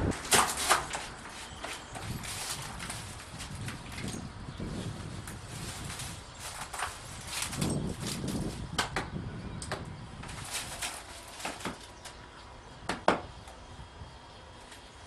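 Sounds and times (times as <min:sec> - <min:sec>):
footsteps on dry leaves: 0:00.0 - 0:08.8, 0:10.3 - 0:12.0.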